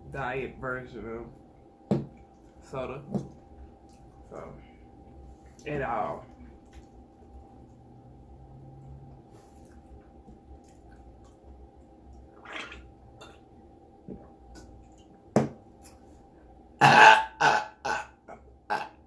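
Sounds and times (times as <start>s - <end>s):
person burping: 16.8s - 19.0s.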